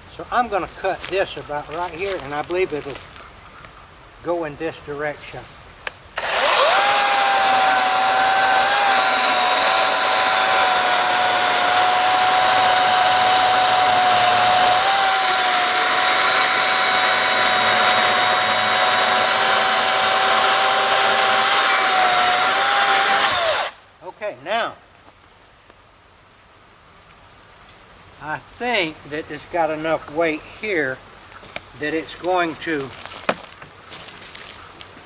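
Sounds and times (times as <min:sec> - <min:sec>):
electric chainsaw cutting wood: 0:06.2 - 0:23.8.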